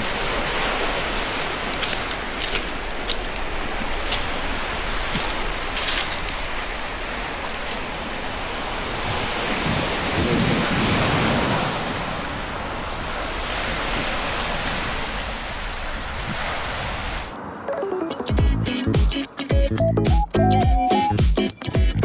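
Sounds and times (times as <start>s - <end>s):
wind buffeting microphone: 0.0s - 17.6s
ocean waves breaking: 0.0s - 18.3s.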